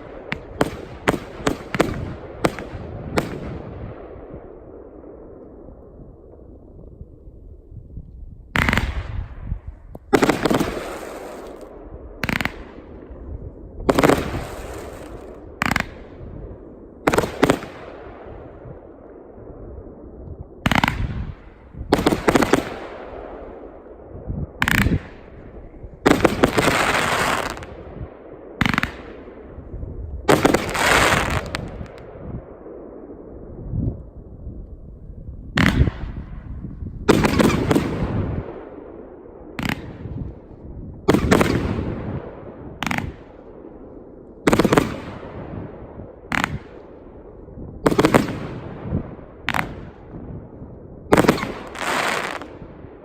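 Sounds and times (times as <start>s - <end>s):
fireworks firing rapid volleys: 0.0s - 4.2s, 8.6s - 9.3s, 10.0s - 13.1s, 13.9s - 18.4s, 20.6s - 23.8s, 24.6s - 27.9s, 28.5s - 29.5s, 30.3s - 32.1s, 35.6s - 36.4s, 37.1s - 40.4s, 41.1s - 47.2s, 47.8s - 50.3s, 51.1s - 53.0s.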